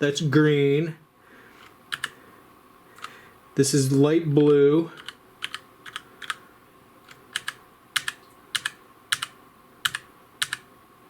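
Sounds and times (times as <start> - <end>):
mechanical keyboard key clicks: 1.9 - 2.1, 5.0 - 6.4, 7.1 - 9.3, 9.9 - 10.6.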